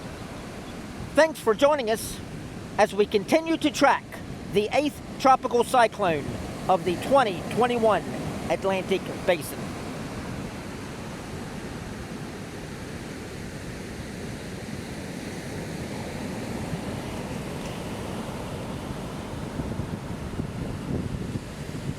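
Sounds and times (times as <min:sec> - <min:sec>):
ocean surf washing on beach: 0:00.0 - 0:21.9
wind buffeting microphone: 0:06.0 - 0:12.8, 0:15.7 - 0:21.9.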